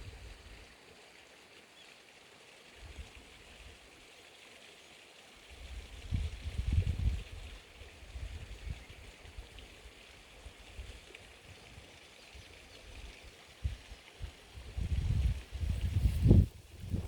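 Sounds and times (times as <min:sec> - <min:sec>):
wind rumble on microphone: 0:05.6 - 0:09.5, 0:12.9 - 0:17.0.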